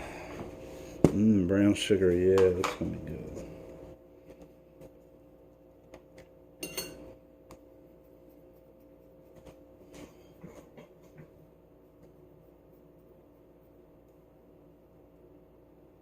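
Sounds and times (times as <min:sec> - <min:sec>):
steady low hum: 0:00.0 - 0:16.0
utensil clinking against a dish: 0:06.6 - 0:07.1.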